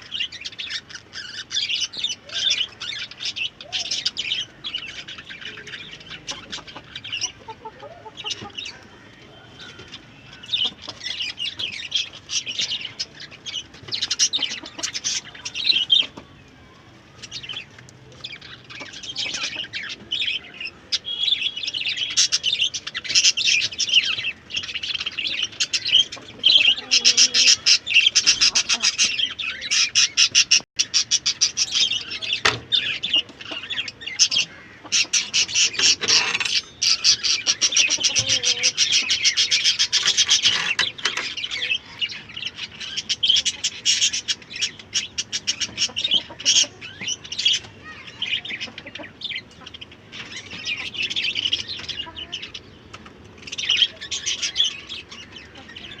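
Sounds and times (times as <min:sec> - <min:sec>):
birds chirping and peeping: 0:00.0 - 0:56.0.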